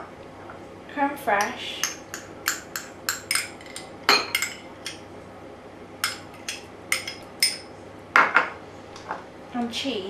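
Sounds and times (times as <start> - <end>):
spoon clinking against bowl: 1.4 - 5.0, 6.0 - 7.7.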